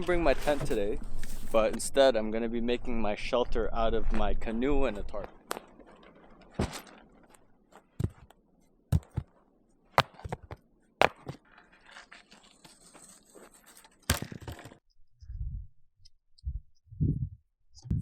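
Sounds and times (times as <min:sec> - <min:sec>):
sharp knocks: 0:09.0 - 0:09.3, 0:10.0 - 0:11.4
gear rustling: 0:10.0 - 0:14.8.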